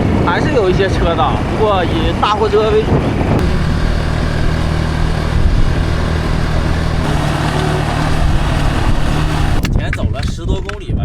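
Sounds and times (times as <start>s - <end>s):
wind noise: 0.0s - 11.0s
small motorcycle engine running: 3.4s - 9.7s.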